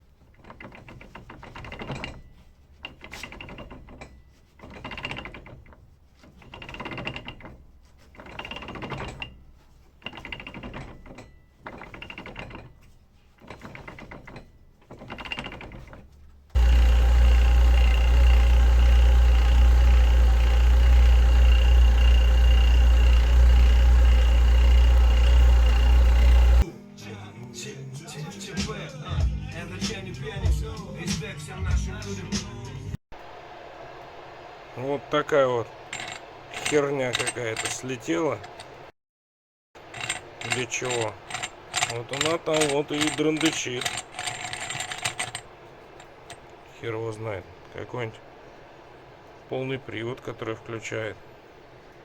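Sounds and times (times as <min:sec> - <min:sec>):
transfer case rattling and knocking: 0:16.6 - 0:26.6, 0:39.9 - 0:46.4.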